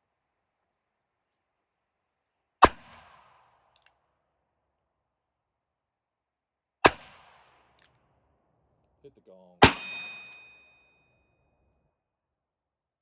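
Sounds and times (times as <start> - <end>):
gunshots with echo: 9.6 - 10.4.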